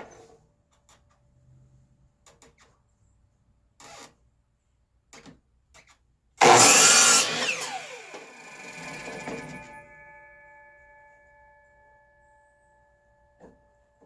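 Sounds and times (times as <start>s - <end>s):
miter saw cutting board: 6.4s - 9.9s
saw blade spinning down: 6.4s - 10.4s.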